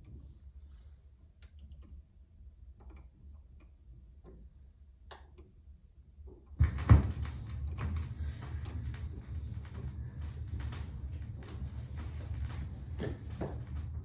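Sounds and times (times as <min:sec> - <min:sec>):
low steady hum: 0:00.0 - 0:14.0
wood fire crackling and popping: 0:06.6 - 0:14.0.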